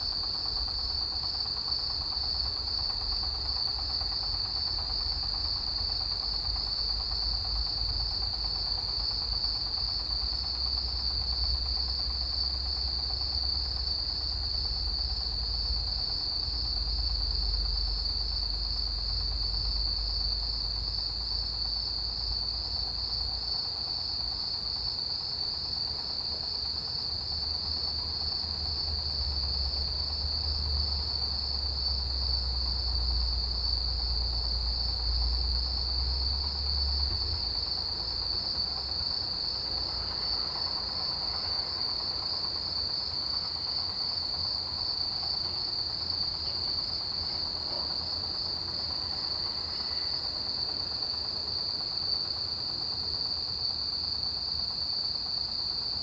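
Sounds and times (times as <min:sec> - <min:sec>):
insect chirping in groups: 0:00.0 - 0:56.0
insect high trill: 0:47.0 - 0:56.0.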